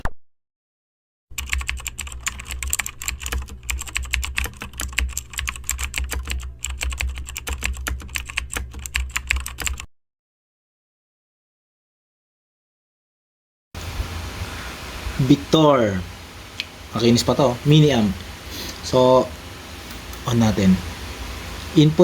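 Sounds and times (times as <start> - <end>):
keyboard typing clicks: 1.4 - 9.9
low steady hum: 13.8 - 22.0.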